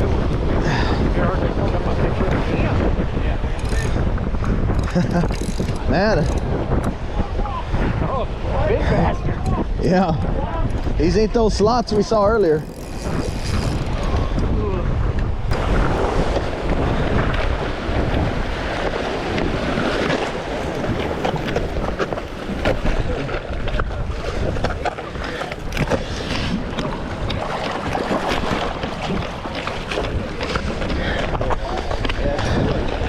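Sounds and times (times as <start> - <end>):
surf washing against rocks: 0.0 - 33.0
wind buffeting microphone: 0.0 - 33.0.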